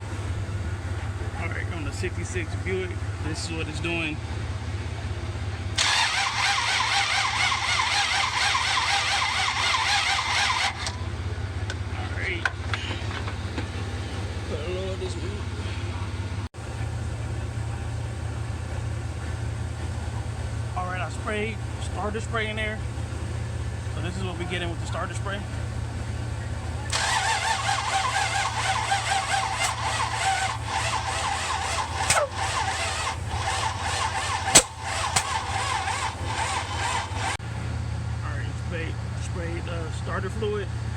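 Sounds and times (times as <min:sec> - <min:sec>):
engine cranking on starter: 0:05.7 - 0:16.5, 0:26.8 - 0:37.4.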